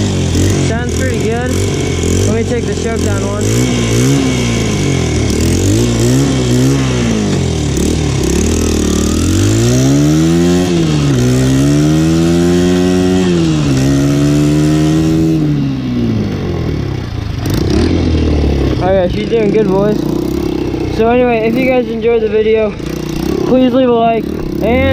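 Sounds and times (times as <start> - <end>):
dirt bike engine revving: 0.0 - 24.9.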